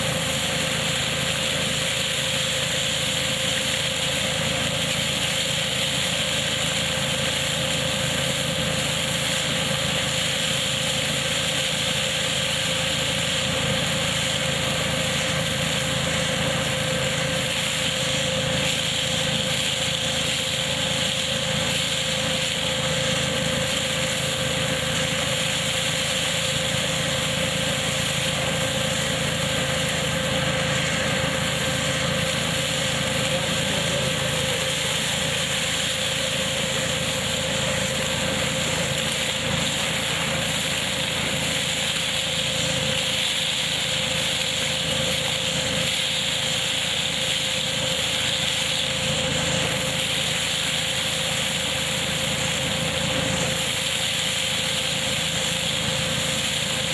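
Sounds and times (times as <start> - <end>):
harvesting machine whine: 0.0 - 56.9
tractor engine running: 12.3 - 43.0.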